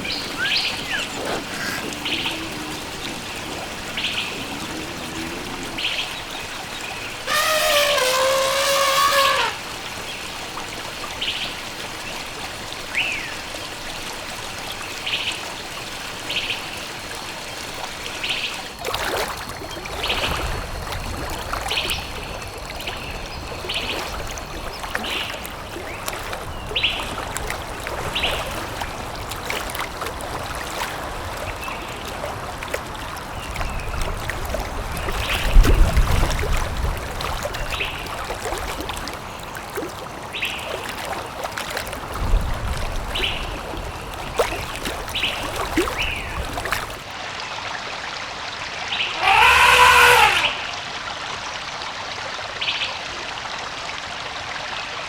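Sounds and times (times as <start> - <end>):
forest birds chirping: 0.0 - 10.3, 48.9 - 50.9
running water: 0.0 - 55.0.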